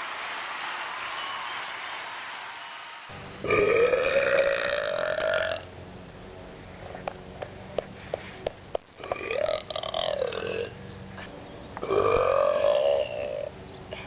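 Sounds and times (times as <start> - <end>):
girl burping: 3.5 - 5.6, 11.8 - 13.5.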